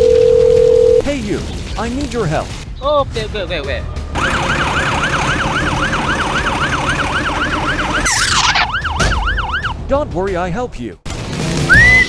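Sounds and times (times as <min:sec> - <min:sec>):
emergency siren yelping: 0:04.2 - 0:09.8.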